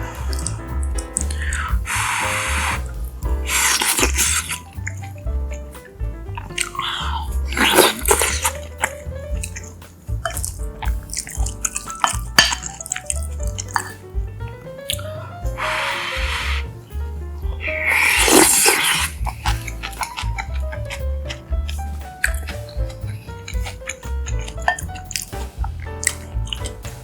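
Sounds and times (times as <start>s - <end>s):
background music with bass line: 0.0s - 27.0s
person eating noisily: 6.6s - 9.6s, 17.6s - 21.0s.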